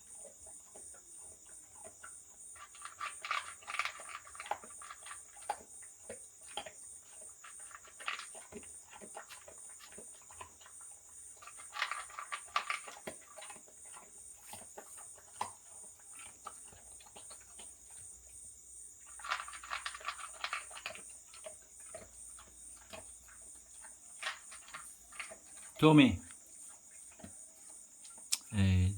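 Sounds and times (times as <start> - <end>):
crickets chirping: 0.0 - 28.9
dog crunching dry kibble: 2.6 - 10.8, 11.4 - 17.7, 19.0 - 25.8.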